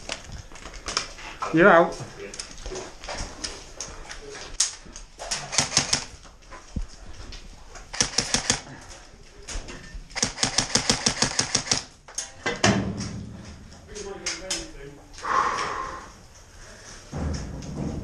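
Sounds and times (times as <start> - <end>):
airsoft guns firing bursts: 5.4 - 6.1, 7.9 - 8.7, 10.2 - 11.9.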